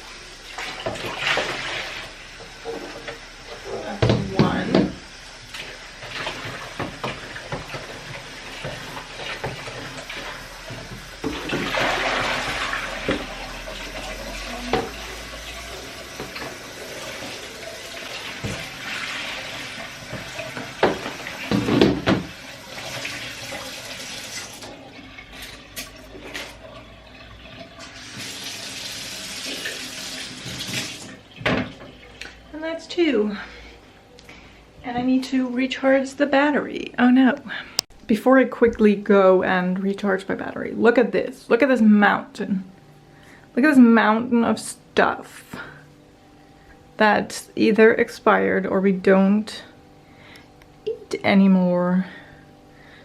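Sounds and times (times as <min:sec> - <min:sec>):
tap water running into sink: 0:00.0 - 0:32.3
plastic bins knocking: 0:20.2 - 0:22.3.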